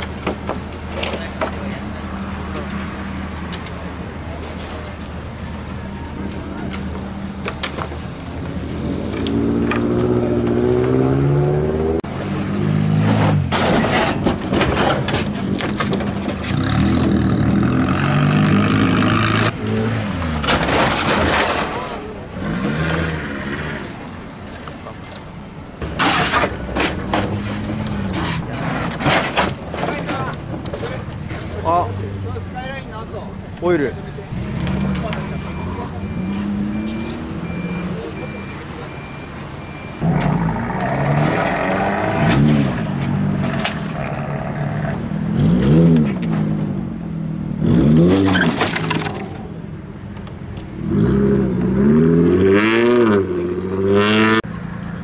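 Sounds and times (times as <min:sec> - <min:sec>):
car engine revving: 0:08.6 - 0:24.2, 0:40.0 - 0:49.4, 0:50.7 - 0:54.6.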